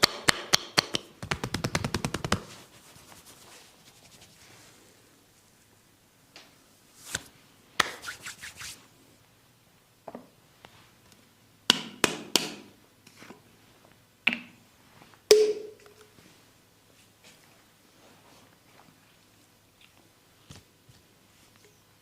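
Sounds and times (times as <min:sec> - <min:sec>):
hands slapping head and neck: 0:00.0 - 0:02.6, 0:07.0 - 0:08.8.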